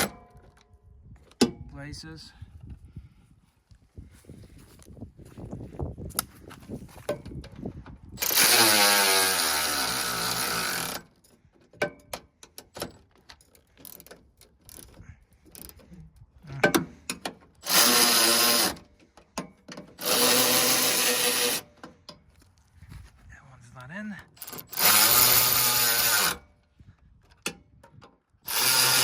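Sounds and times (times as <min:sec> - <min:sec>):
power ratchet motor running: 0:08.2 - 0:11.1, 0:17.6 - 0:18.9, 0:20.0 - 0:21.7, 0:24.4 - 0:26.4, 0:28.5 - 0:29.0.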